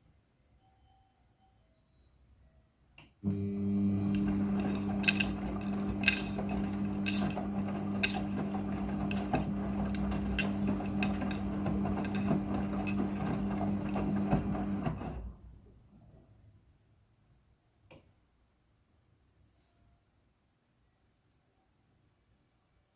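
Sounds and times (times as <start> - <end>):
washing machine motor humming: 3.2 - 15.3.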